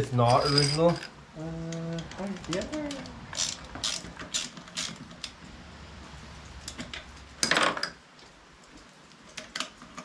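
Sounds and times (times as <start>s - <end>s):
metal tools clinking: 0.0s - 1.2s.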